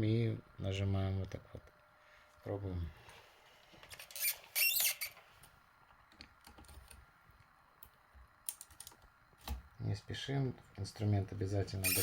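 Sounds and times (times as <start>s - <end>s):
metal scraping squeaks: 4.0s - 5.2s, 11.8s - 12.0s.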